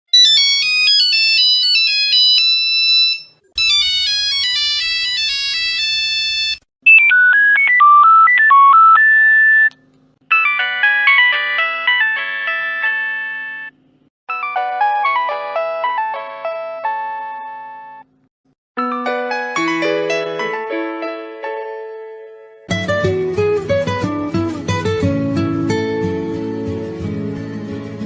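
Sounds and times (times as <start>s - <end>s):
mobile phone ringtones: 0.2s - 9.7s, 10.3s - 13.8s.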